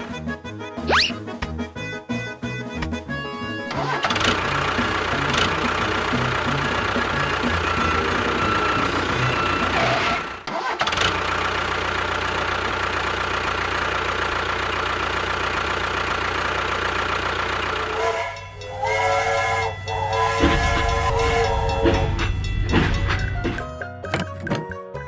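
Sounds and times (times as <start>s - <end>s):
pitched horn-like tone: 17.8s - 22.3s.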